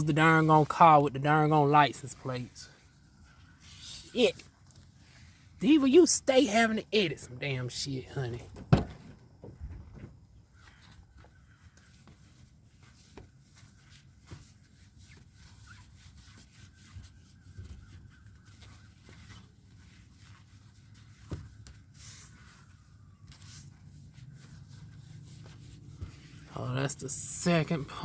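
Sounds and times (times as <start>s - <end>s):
handling clicks and rustles: 6.6s - 28.0s.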